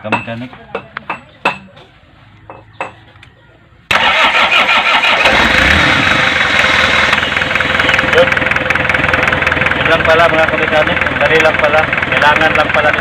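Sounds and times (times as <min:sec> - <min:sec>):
diesel engine starting and running: 0:03.8 - 0:13.0.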